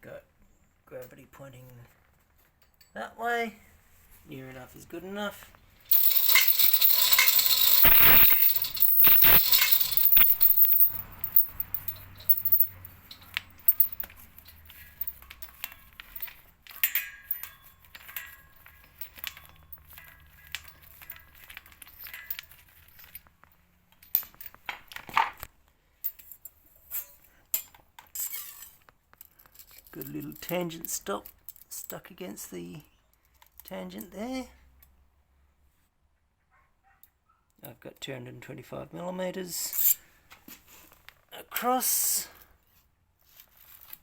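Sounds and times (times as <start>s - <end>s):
loud scraping and rustling: 5.9s - 15.1s
small hardware clinking: 5.9s - 23.3s.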